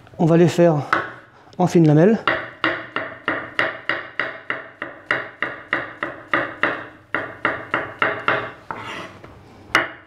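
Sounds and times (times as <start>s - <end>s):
knife chopping on cutting board: 2.2s - 9.1s.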